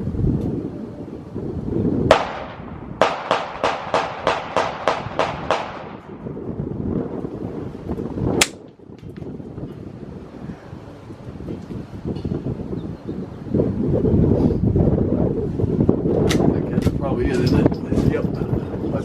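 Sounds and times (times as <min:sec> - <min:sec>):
gunshots with echoes: 0:02.1 - 0:06.1.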